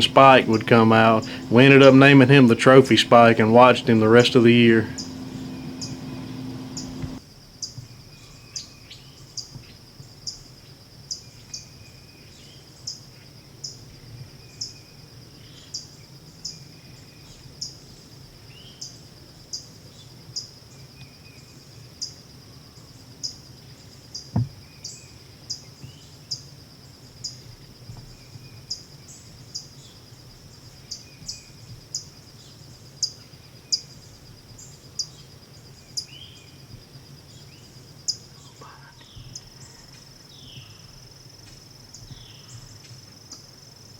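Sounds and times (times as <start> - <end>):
low hum: 0.0 - 7.2
insects trilling: 0.0 - 43.9
faint bird chirps: 4.9 - 7.0, 37.3 - 40.9.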